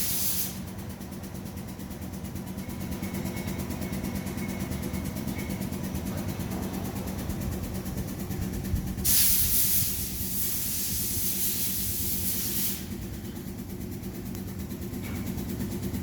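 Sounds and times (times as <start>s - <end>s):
loud hiss: 0.0s - 0.7s, 9.0s - 13.0s
machine engine humming: 0.6s - 10.4s, 12.0s - 16.0s.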